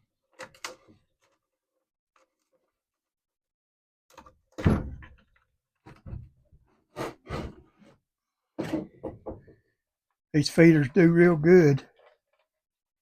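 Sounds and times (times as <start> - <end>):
knocks and clunks of feeder parts: 8.6 - 9.6.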